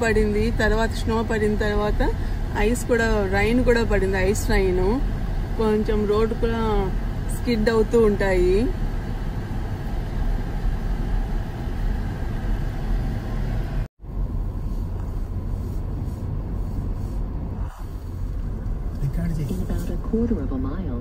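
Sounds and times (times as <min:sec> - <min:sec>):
car road and engine rumble: 0:00.0 - 0:21.0.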